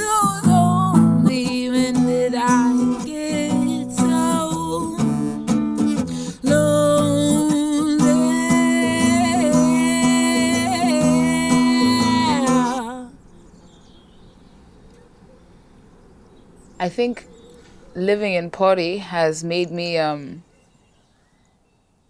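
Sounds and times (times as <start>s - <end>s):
acoustic guitar strumming: 0.0s - 13.1s
person singing: 0.0s - 13.2s.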